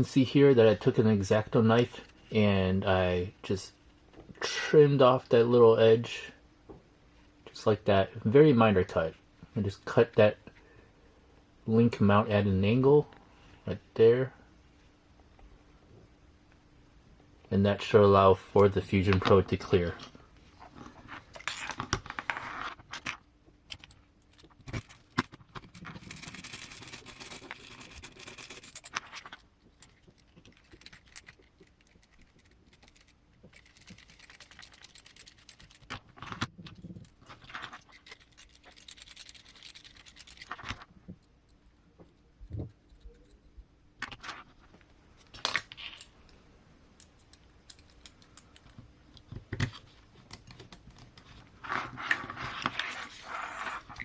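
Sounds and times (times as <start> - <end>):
parts scraping and rustling: 19.1 - 46.4, 47.0 - 54.0
small parts clicking and tapping: 22.9 - 44.2, 47.0 - 51.4.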